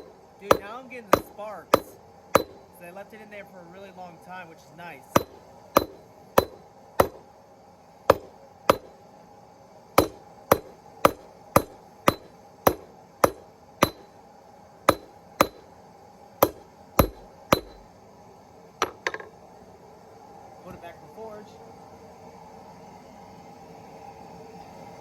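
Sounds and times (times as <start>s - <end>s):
hammer striking metal on anvil: 0.0s - 2.7s, 5.2s - 7.2s, 8.1s - 9.0s, 10.0s - 14.1s, 14.9s - 15.7s, 16.4s - 17.9s, 18.8s - 19.3s.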